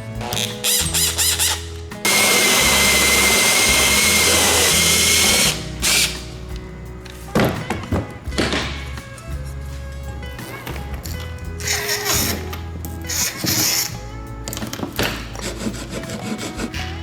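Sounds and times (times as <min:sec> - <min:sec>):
background music: 0:00.0 - 0:17.0
power drill running: 0:00.2 - 0:06.2.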